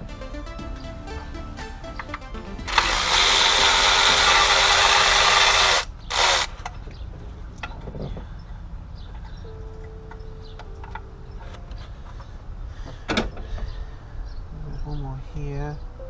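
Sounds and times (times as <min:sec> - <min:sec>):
electric power tool running: 0:02.6 - 0:06.6.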